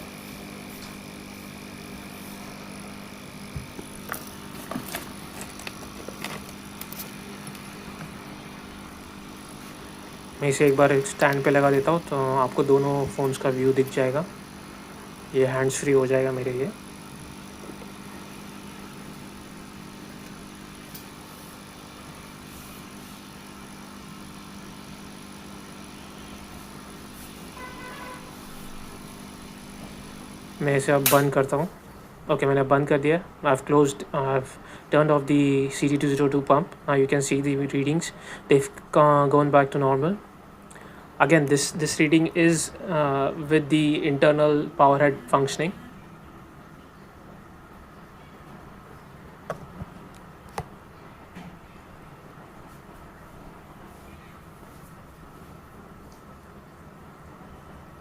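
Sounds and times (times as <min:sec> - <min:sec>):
aquarium powerhead running: 0:00.0 - 0:39.6
aquarium air pump humming: 0:00.0 - 0:58.0.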